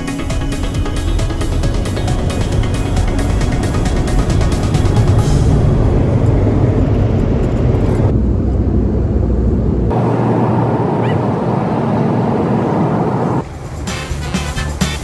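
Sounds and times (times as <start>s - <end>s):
car wash rushing and rumbling: 0.0s - 15.0s.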